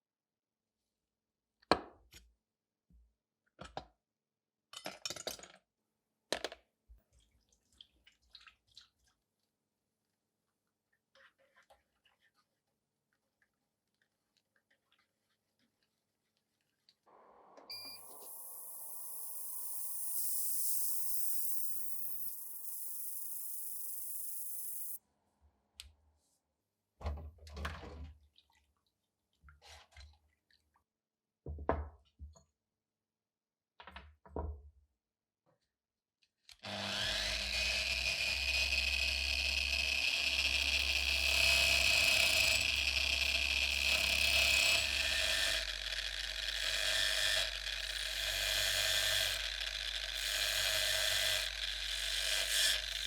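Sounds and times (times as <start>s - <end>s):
power tool whining: 17.7s - 25.0s, 36.7s - 53.0s.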